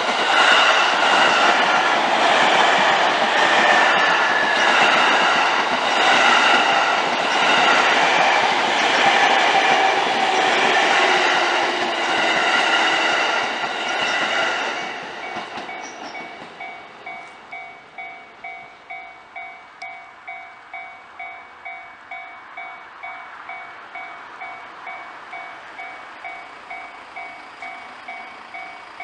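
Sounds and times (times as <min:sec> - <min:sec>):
train wheels rumbling on rail: 0:00.0 - 0:29.0
crossing warning bell ringing: 0:03.2 - 0:29.0.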